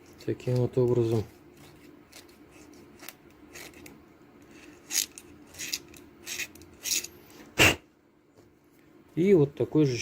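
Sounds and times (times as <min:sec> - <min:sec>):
knife scraping metal: 0:01.1 - 0:07.3.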